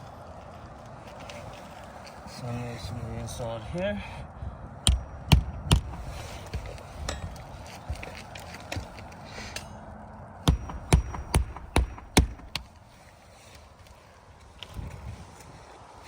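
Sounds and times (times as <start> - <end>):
hammer striking nails: 4.9 - 7.4, 10.5 - 12.7.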